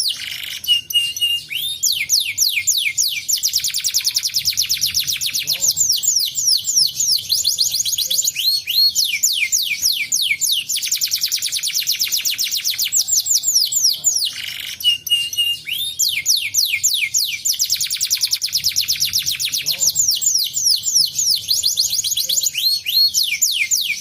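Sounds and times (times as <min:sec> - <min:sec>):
canary singing trills: 0:00.0 - 0:24.0.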